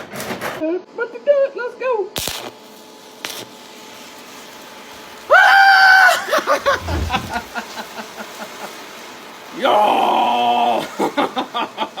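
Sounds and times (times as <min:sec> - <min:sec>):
faint steady hiss: 0:02.6 - 0:12.0.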